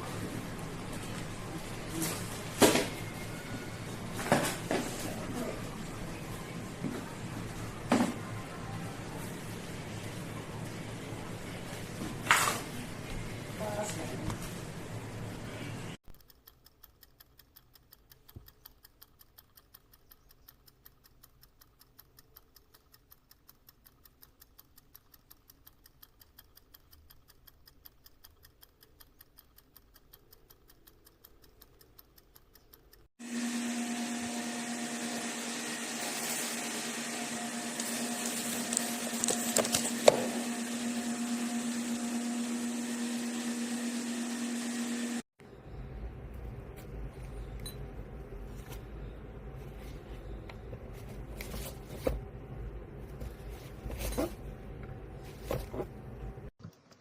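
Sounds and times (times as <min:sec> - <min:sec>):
sharp clicks: 0:16.0 - 0:33.1
kitchen timer ticking: 0:16.0 - 0:45.5, 0:47.4 - 0:48.3.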